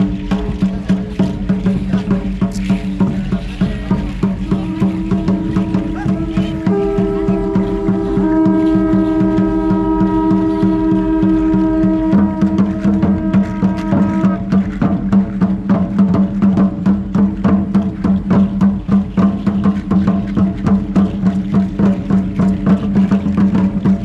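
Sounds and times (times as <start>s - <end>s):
droning held tone: 2.4s - 14.2s.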